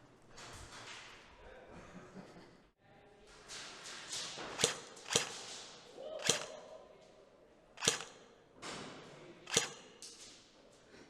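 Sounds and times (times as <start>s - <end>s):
airsoft gun shots: 4.5s - 5.5s, 6.2s - 6.6s, 7.8s - 8.4s, 9.5s - 10.0s.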